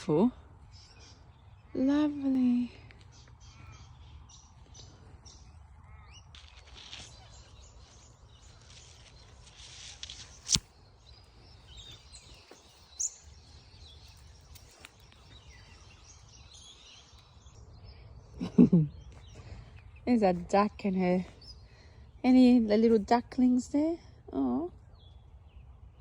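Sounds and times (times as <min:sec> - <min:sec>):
bird chirps: 0:00.0 - 0:23.0
sharp click: 0:10.0 - 0:10.7.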